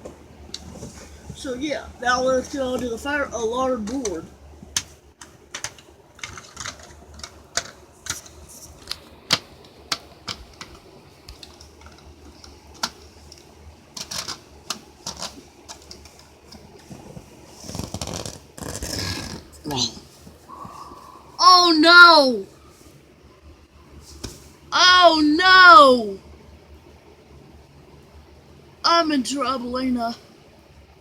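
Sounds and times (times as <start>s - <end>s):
sharp clicks and knocks: 4.7s - 13.4s.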